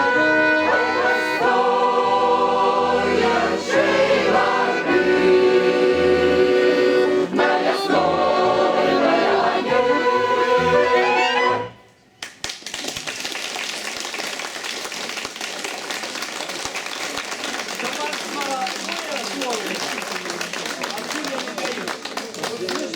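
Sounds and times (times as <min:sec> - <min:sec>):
choir singing with instruments: 0:00.0 - 0:11.8
audience applauding: 0:12.2 - 0:22.9.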